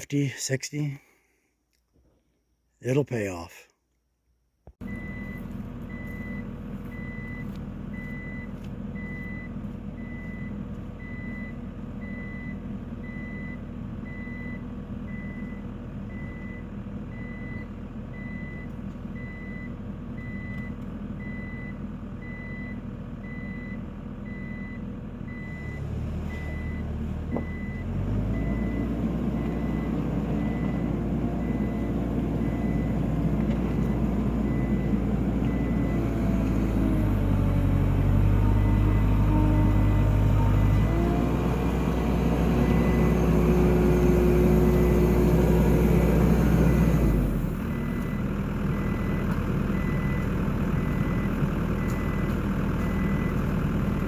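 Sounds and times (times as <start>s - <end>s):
backup alarm beeping: 4.8s - 33.0s, 33.6s - 36.0s
diesel engine running: 4.8s - 54.0s.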